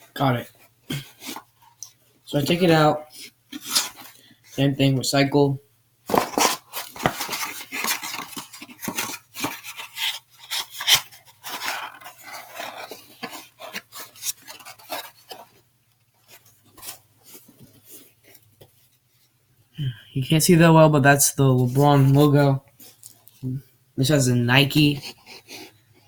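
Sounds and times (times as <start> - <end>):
paper crinkling and rustling: 3.2 - 4.5, 6.1 - 19.3.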